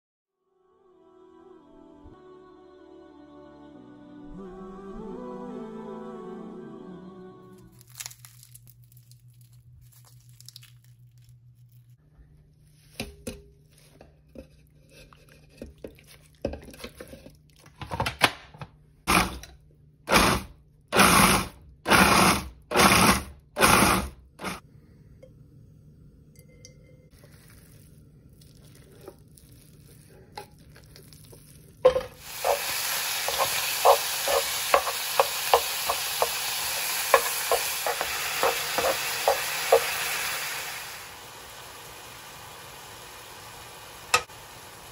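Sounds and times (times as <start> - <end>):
oil sizzling and popping: 27.3 - 44.9.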